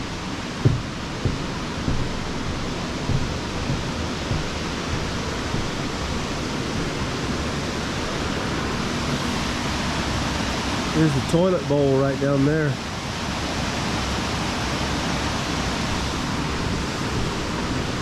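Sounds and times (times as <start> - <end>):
soft low bumps: 0.0 - 10.4
water rushing over rapids: 0.0 - 18.0.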